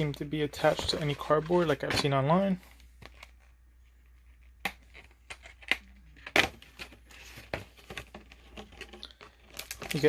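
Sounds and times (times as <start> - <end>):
foil packs and cardboard crinkling: 6.2 - 10.0.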